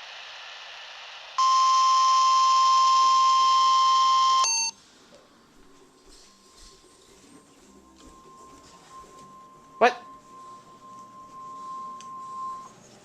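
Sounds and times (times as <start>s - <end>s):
steady hiss: 0.0s - 1.4s
high alarm beep: 1.4s - 4.8s, 7.8s - 12.8s.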